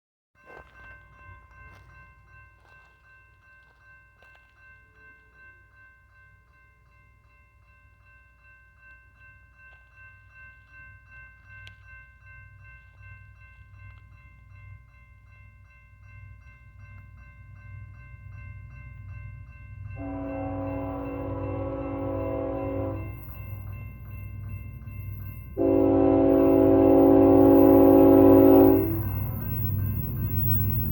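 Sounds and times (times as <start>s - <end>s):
crossing bell ringing: 0.4s - 30.9s
freight train rumble: 16.0s - 30.9s
locomotive horn: 20.0s - 23.2s, 25.6s - 29.4s.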